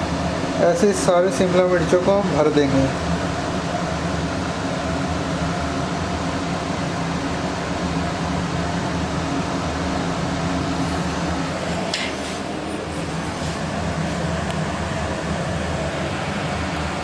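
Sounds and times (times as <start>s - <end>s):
fan motor whirring hum: 0.0s - 17.0s.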